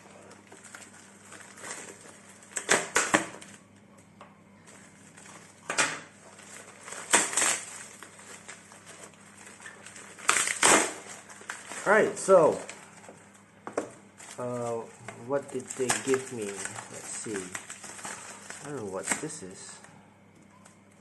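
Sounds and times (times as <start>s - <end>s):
packaging being cut and opened: 0.6s - 3.6s, 6.4s - 12.8s, 15.4s - 19.6s.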